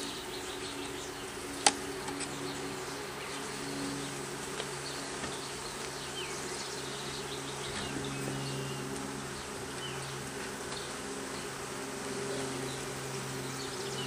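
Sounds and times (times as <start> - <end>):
honeybees buzzing: 0.0 - 14.0.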